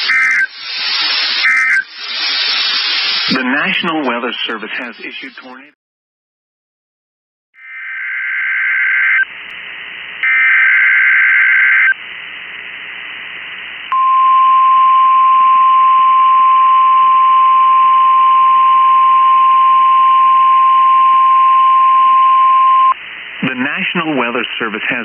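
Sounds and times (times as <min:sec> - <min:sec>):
screeching data tones: 0:00.0 - 0:03.5, 0:07.6 - 0:09.3, 0:10.2 - 0:12.0
radio receiver hiss: 0:00.0 - 0:05.8, 0:08.7 - 0:14.0.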